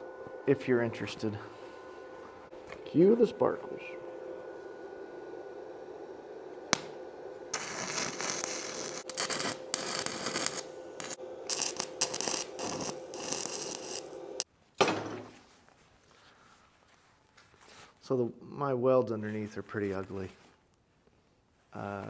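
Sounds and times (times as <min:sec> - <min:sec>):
steady hum: 0:00.0 - 0:14.4
welding arc crackling and hissing: 0:06.7 - 0:14.4.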